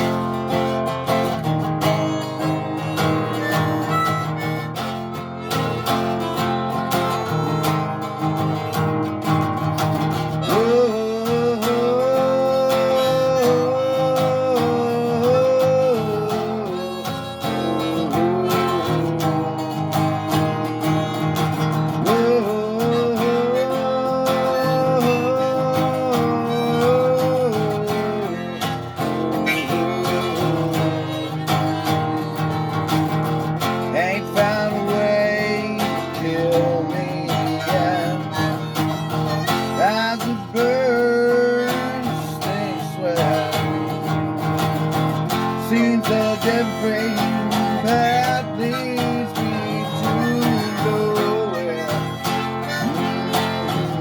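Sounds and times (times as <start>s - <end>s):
acoustic guitar strumming: 0.0s - 54.0s
sliding melody line: 0.0s - 54.0s.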